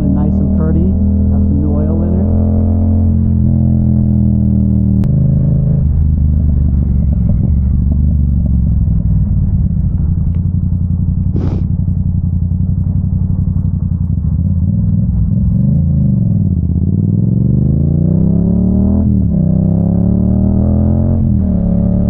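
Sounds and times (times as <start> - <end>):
motorcycle engine running: 0.0 - 22.0
short hiss: 11.4 - 11.7.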